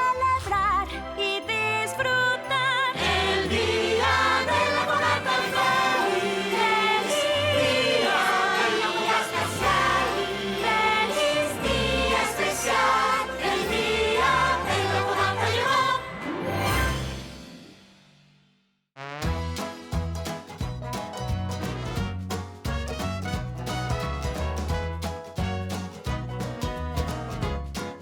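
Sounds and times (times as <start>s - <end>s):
choir singing: 2.9s - 17.2s
instrumental backing with bass: 19.2s - 28.0s.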